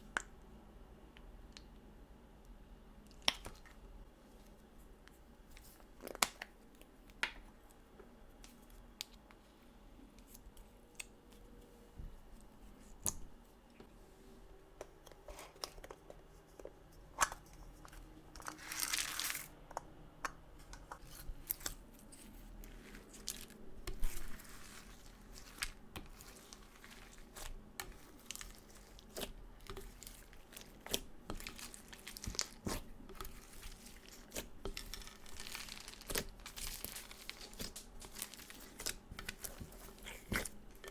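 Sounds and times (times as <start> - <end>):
sticky slime crackles and pops: 23.1 - 40.6.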